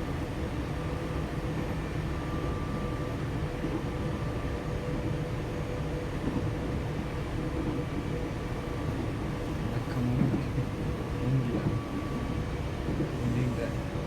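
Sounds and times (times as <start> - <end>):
train rumbling: 3.6 - 14.0.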